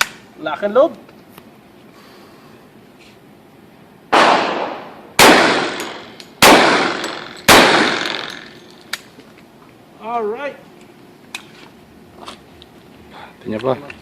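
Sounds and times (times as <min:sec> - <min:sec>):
gunshots with echoing tail: 0:04.1 - 0:08.5.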